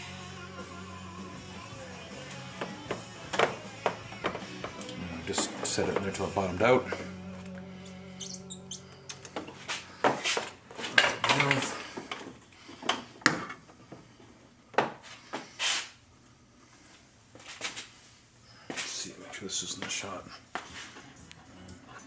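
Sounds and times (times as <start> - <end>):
plastic and metal parts clattering: 10.8 - 13.0.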